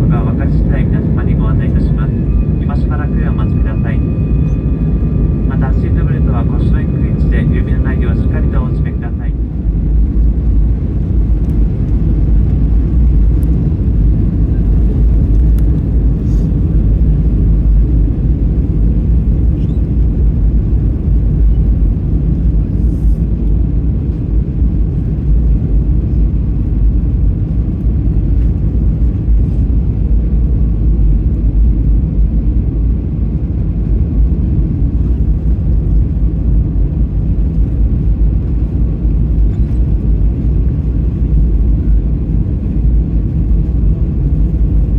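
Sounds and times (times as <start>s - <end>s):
airliner cabin engine rumble: 0.0s - 44.9s.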